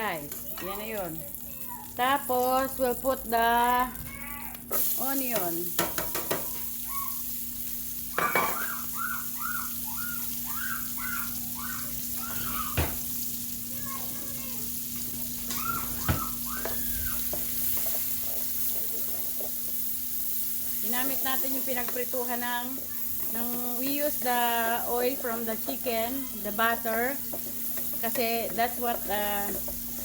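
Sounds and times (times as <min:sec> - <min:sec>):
onion sizzling in oil: 0:00.0 - 0:30.0
spoon knocking on pan: 0:05.4 - 0:06.8, 0:08.2 - 0:08.9, 0:12.7 - 0:13.1.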